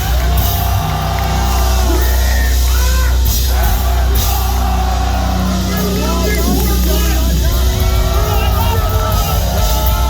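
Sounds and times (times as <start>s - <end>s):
heavy metal band playing: 0.0s - 10.0s
yelled vocals: 0.0s - 10.0s.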